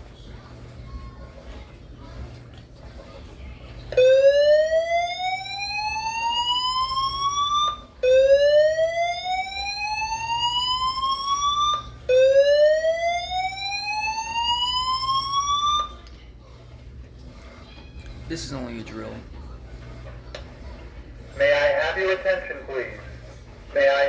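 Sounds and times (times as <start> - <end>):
fire alarm slow-whoop tone: 4.0 - 16.0.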